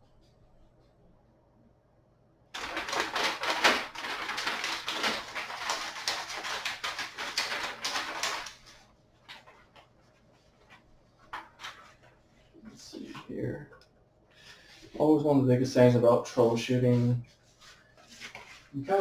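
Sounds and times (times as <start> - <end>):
packaging crinkling and rustling: 2.6 - 9.9, 16.2 - 19.0.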